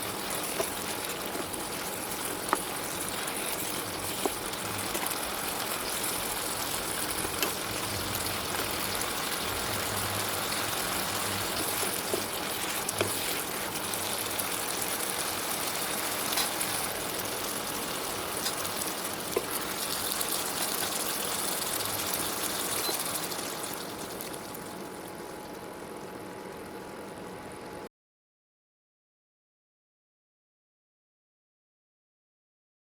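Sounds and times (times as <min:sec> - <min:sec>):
food sizzling in a hot pan: 0:00.0 - 0:25.0.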